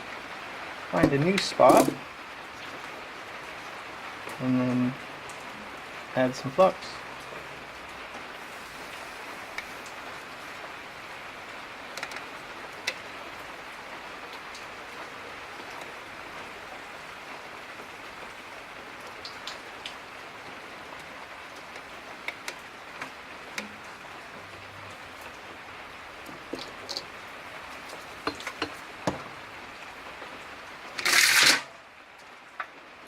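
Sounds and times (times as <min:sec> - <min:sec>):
flux sizzling under soldering iron: 0:08.4 - 0:10.6.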